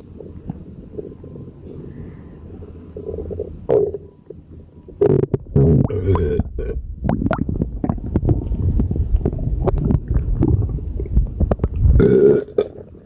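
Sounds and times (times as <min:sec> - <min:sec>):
stomach gurgling and rumbling: 0:02.9 - 0:13.0
loud drawn-out burp: 0:05.0 - 0:06.8, 0:12.0 - 0:12.8.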